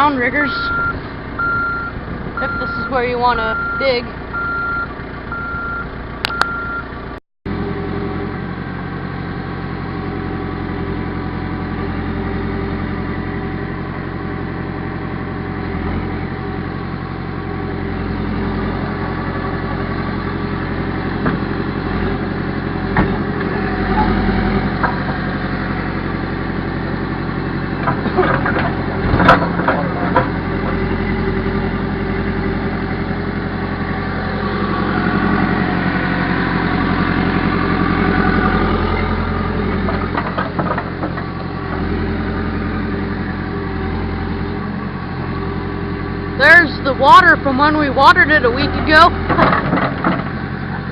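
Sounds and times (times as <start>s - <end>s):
diesel engine running: 0.0s - 50.9s
sharp clanks and knocks: 27.8s - 30.8s, 39.8s - 41.8s, 49.2s - 50.8s.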